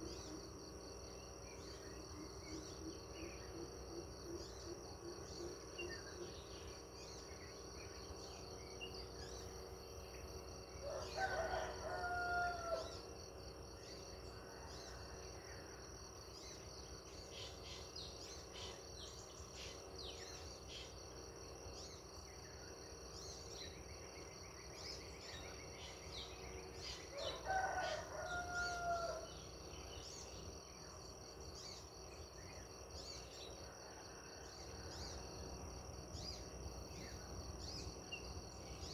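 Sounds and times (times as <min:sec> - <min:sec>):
high insect chorus: 0:00.0 - 0:38.9
rooster crowing: 0:10.8 - 0:13.0, 0:27.1 - 0:29.4.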